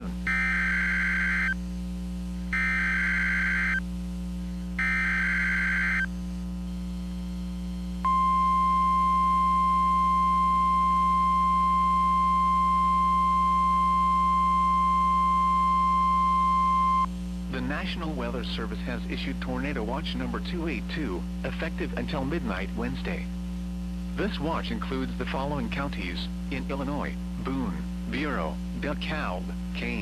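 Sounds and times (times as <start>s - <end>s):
low steady hum: 0.0s - 30.0s
warbling data screech bursts: 0.3s - 1.6s, 2.6s - 3.8s, 4.8s - 6.1s.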